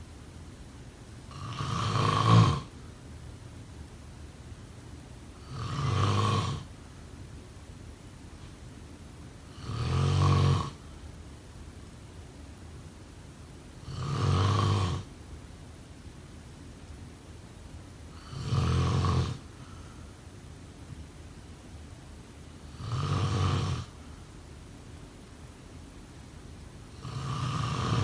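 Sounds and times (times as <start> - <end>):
person snoring: 1.3 - 2.7, 5.4 - 6.7, 9.5 - 10.8, 13.8 - 15.1, 18.2 - 19.8, 22.7 - 24.0, 27.0 - 28.0
quiet breathing: 18.1 - 20.4.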